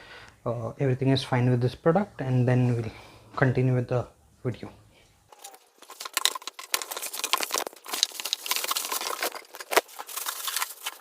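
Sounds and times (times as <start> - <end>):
packaging crinkling and tearing: 5.3 - 11.0.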